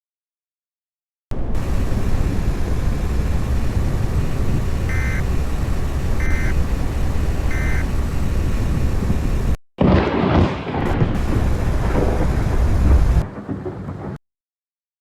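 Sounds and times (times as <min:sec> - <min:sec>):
vehicle road and engine rumble: 0:01.3 - 0:09.6, 0:11.0 - 0:14.2
short electronic beeps: 0:04.9 - 0:05.3, 0:06.2 - 0:06.6, 0:07.5 - 0:07.9.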